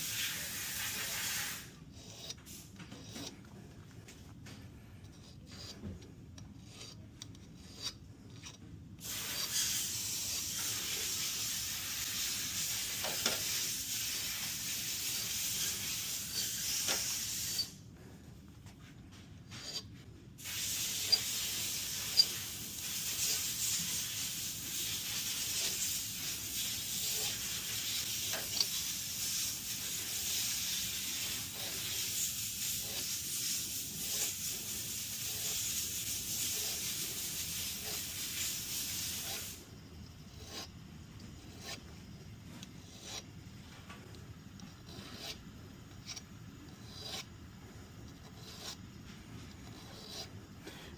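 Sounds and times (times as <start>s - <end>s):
scratchy rubbing of steel: 0.0s - 3.7s, 5.0s - 17.8s, 19.4s - 39.6s, 40.2s - 41.9s, 42.5s - 43.7s, 44.6s - 50.9s.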